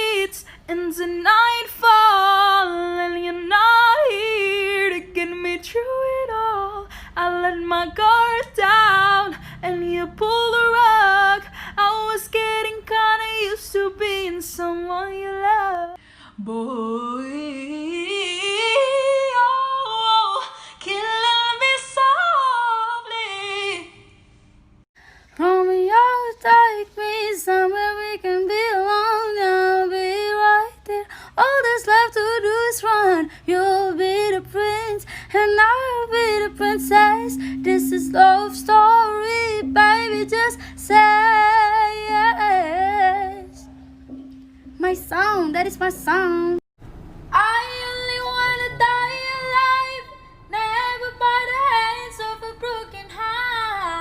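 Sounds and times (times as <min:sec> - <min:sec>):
woman singing solo: 0:34.6 - 0:46.6.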